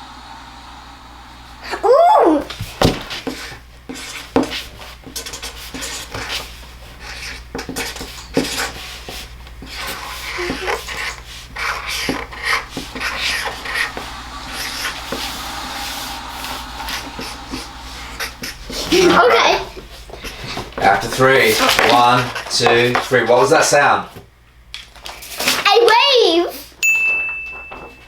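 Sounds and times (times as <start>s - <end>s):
ocean waves washing: 12.4s - 19.7s.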